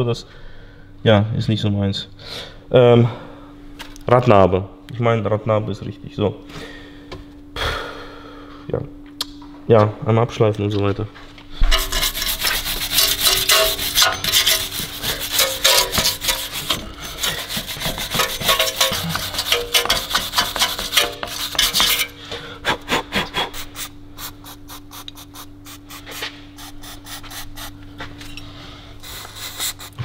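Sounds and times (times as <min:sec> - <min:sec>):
faint steady hum: 0:00.0 - 0:30.0
wire brush scrubbing rust: 0:11.7 - 0:22.2, 0:29.0 - 0:30.0.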